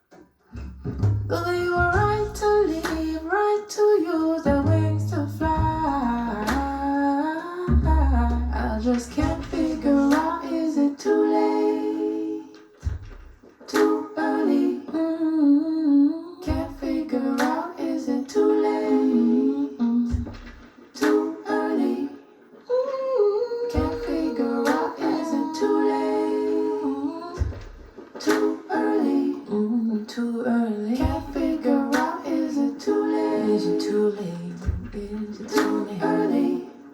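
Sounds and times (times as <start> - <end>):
deep bass note: 4.5 - 6.7, 7.7 - 10.1
wordless vocal over plucked strings: 22.7 - 27.6.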